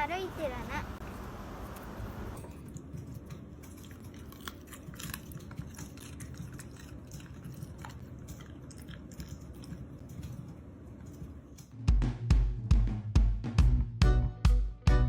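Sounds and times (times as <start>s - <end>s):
dog chewing clicks: 2.7s - 10.6s.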